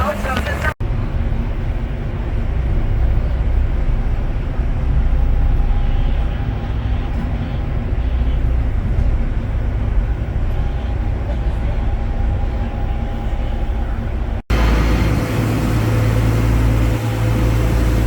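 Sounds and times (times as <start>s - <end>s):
boat engines rumbling: 0.0s - 18.0s
rushing water noise: 14.5s - 18.0s.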